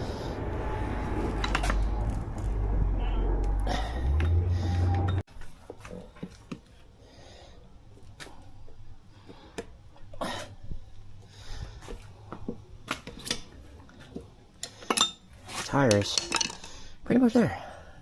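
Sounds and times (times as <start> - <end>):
tire iron scraping rim: 0.0 - 5.3.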